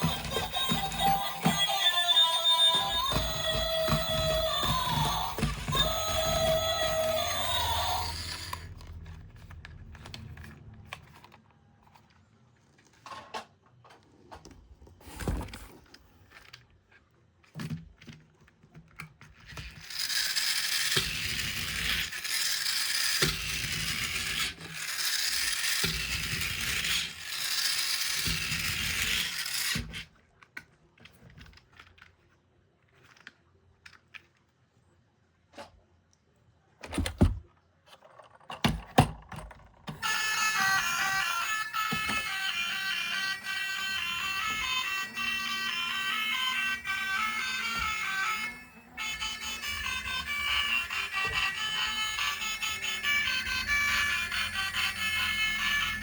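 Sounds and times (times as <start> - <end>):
toy packaging tearing: 0.0 - 10.4, 19.3 - 30.1, 40.0 - 56.0
plastic toys clicking and knocking: 0.0 - 14.5, 15.5 - 34.6, 36.8 - 56.0.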